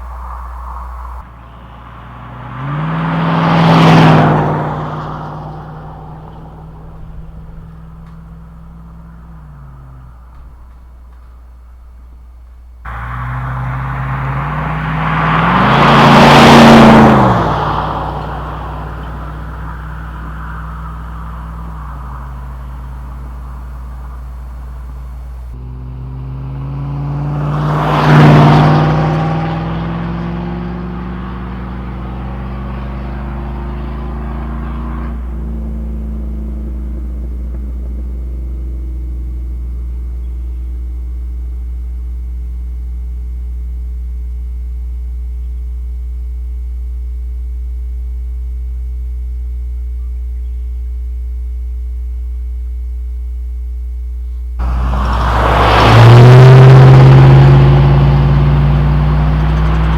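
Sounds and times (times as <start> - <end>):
truck engine revving: 0.0 - 11.8, 12.8 - 41.6, 54.6 - 59.9.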